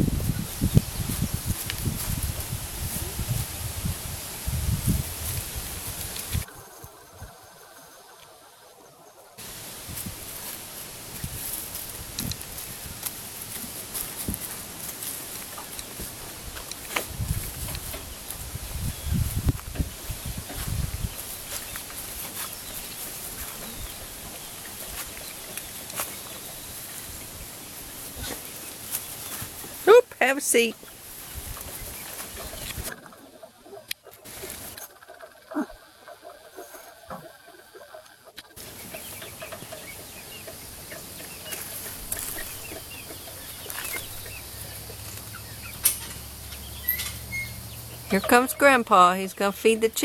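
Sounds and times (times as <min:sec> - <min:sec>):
chickens clucking: 0:30.8 - 0:50.0.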